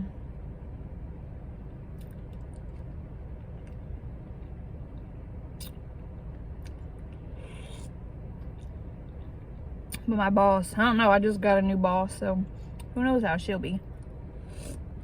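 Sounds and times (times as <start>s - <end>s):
steady low hum: 0.0s - 15.0s
eating sounds: 6.6s - 8.8s, 14.4s - 14.8s.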